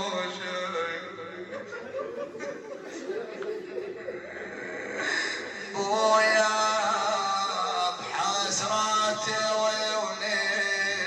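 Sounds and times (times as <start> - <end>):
man chanting: 0.0 - 1.4, 5.4 - 11.0
people weeping and sobbing: 1.1 - 11.0.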